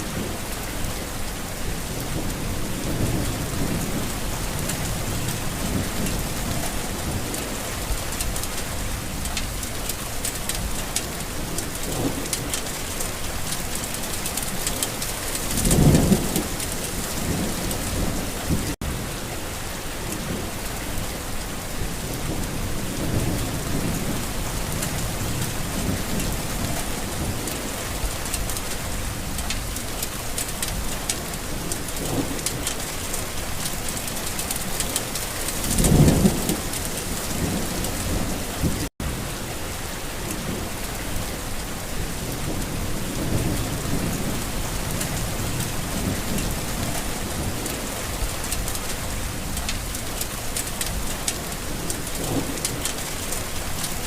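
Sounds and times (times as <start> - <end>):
steady rain falling: 0.0 - 54.0
thunder rumbling: 14.1 - 19.1, 21.8 - 39.4.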